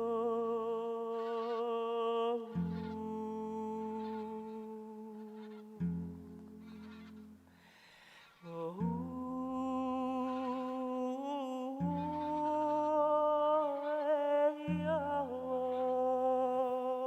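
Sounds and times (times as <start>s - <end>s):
voices humming a chord: 8.5s - 17.0s.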